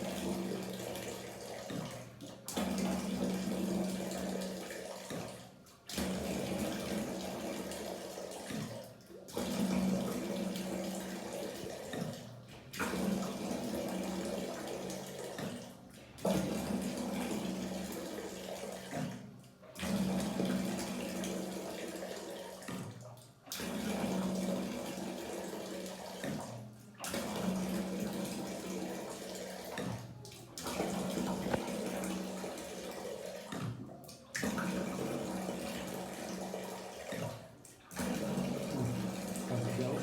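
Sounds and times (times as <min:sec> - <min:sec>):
water rushing out of tank: 0:38.0 - 0:40.0.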